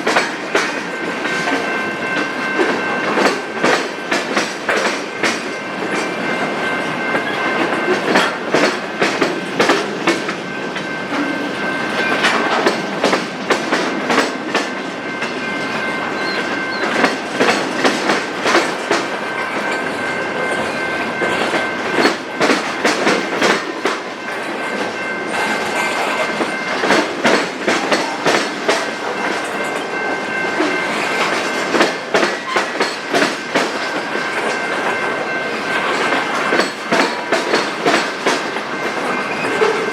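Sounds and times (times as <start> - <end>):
train wheels clattering over rail joints: 0.0 - 20.0, 20.6 - 39.9
high-pitched ring: 15.0 - 17.0.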